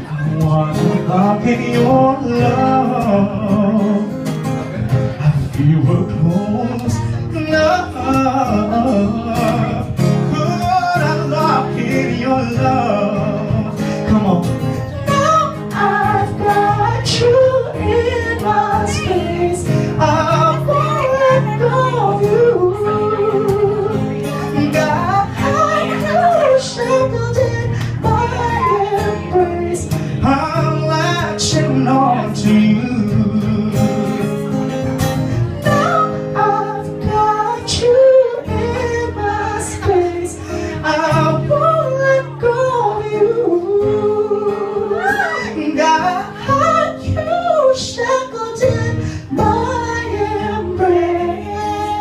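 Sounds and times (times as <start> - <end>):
woman singing pop song: 14.8 - 33.9, 35.4 - 52.0.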